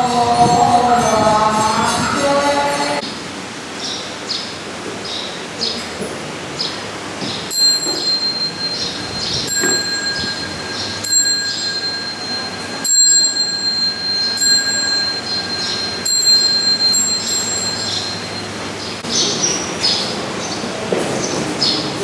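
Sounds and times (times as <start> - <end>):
metallic bell chimes: 0.0 - 3.0, 7.5 - 19.0
birds chirping: 6.6 - 21.9.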